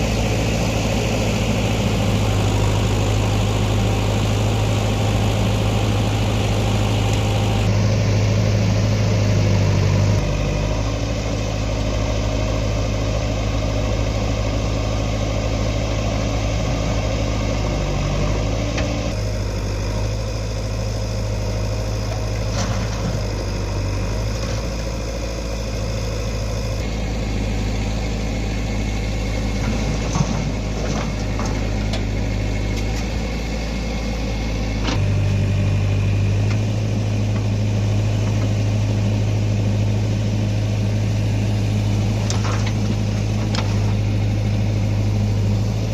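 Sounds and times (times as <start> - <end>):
diesel engine running: 0.0 - 45.9.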